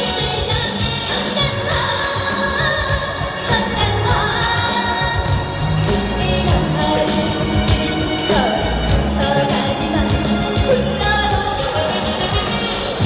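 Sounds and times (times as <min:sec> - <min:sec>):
backing music with steady beat: 0:00.0 - 0:13.0
woman singing: 0:00.0 - 0:13.0.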